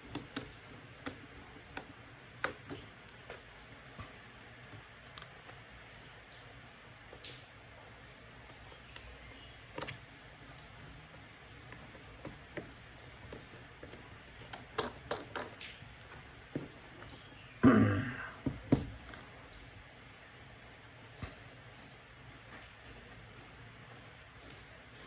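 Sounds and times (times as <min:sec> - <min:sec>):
screwdriver clicks and taps: 0:09.8 - 0:10.0.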